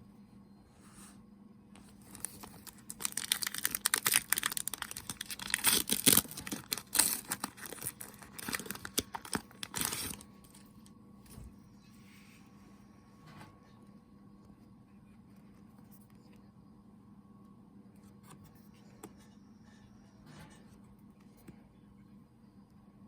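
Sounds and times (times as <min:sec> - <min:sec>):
plastic wrapper crinkling and tearing: 0:02.0 - 0:10.6.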